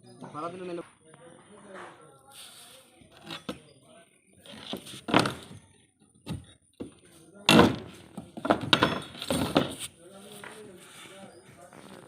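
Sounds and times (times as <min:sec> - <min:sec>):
knocks and thuds: 0:06.2 - 0:09.8.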